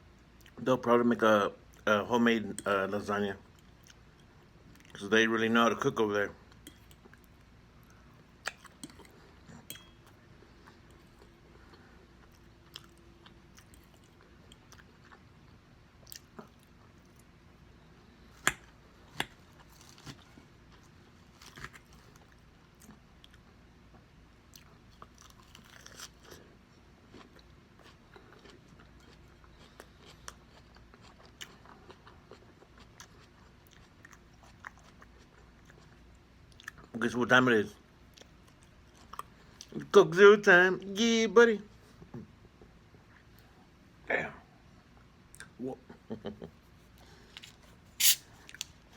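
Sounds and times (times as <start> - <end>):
person chewing food: 6.5 - 17.4, 18.2 - 36.9, 38.1 - 39.8.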